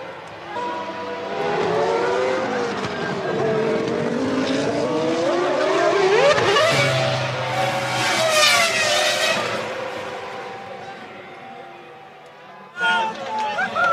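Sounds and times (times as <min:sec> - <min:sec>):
racing car engines at high revs: 0:00.2 - 0:11.5.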